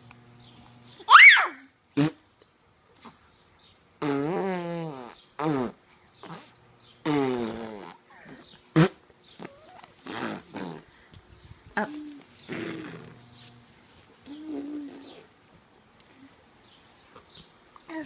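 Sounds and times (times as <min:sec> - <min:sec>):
silly mouth noises: 0:02.0 - 0:02.3, 0:04.0 - 0:10.9, 0:11.7 - 0:13.5, 0:14.2 - 0:15.4.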